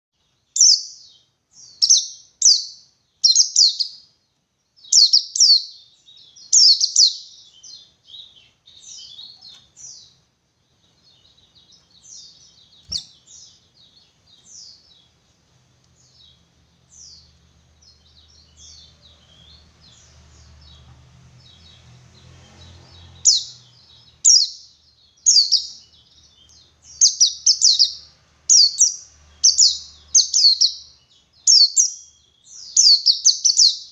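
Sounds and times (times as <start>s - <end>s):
bird chirping and twittering: 0.2s - 33.9s
faint low hum: 0.2s - 33.9s.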